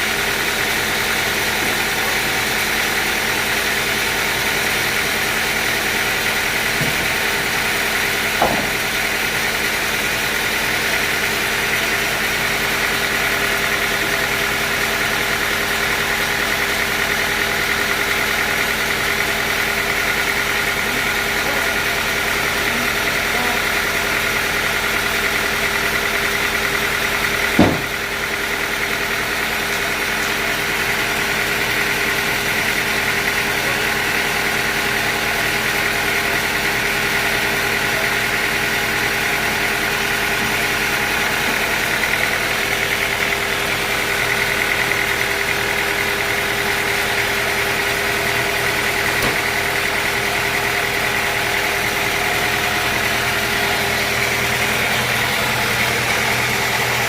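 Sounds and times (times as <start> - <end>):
sawmill machinery humming and whining: 0.0 - 57.0
sharp knock: 8.4 - 8.8, 27.6 - 28.0, 49.2 - 49.6.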